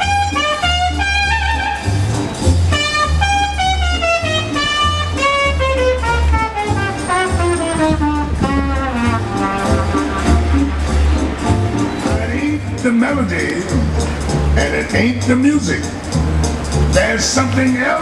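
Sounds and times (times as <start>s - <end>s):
horn-like melody: 0.0s - 13.7s
deep bass beat: 0.0s - 18.0s.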